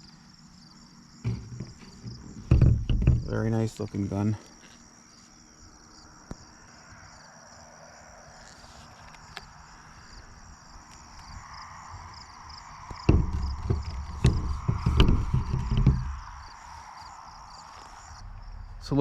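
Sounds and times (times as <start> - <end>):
insects trilling: 0.0 - 19.0
low knocks and rumbles: 1.2 - 3.7, 11.3 - 16.6, 18.1 - 19.0.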